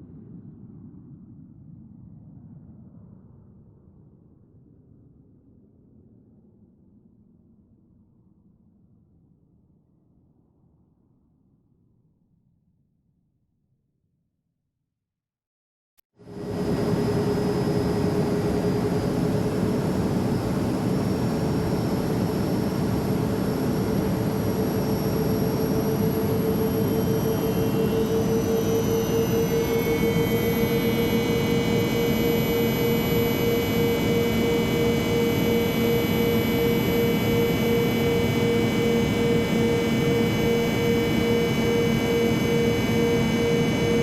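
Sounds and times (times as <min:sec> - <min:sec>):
jet engine rushing and whining: 0:16.3 - 0:44.0.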